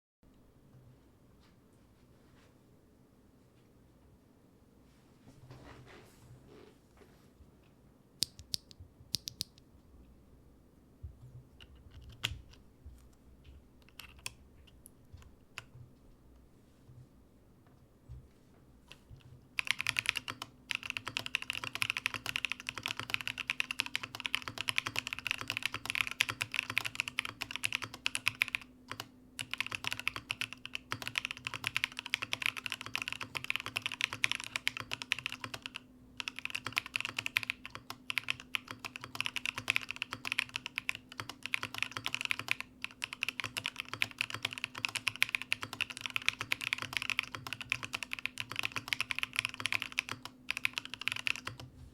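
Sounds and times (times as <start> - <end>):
typing on mechanical keyboard: 11.6 - 12.6, 13.8 - 14.4, 19.6 - 51.7.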